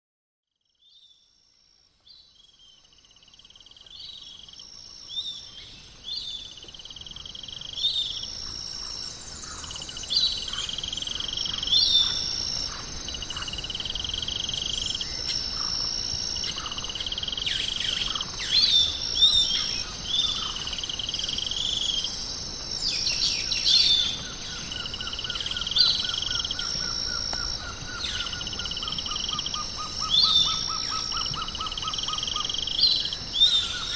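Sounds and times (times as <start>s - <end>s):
high insect drone: 0.6s - 33.9s
birds chirping and calling: 7.7s - 22.2s, 22.8s - 33.9s.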